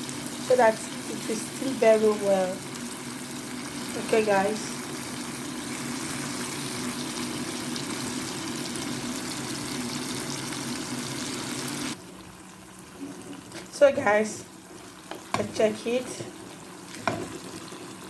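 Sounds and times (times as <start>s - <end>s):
pot steaming hiss: 0.0s - 12.1s.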